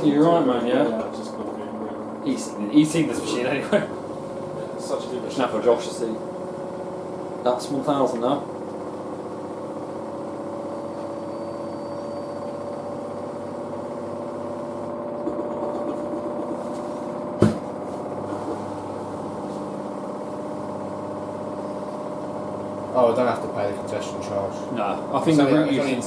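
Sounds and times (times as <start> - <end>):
washing machine spinning: 0.0 - 26.0
sharp knock: 17.4 - 17.7.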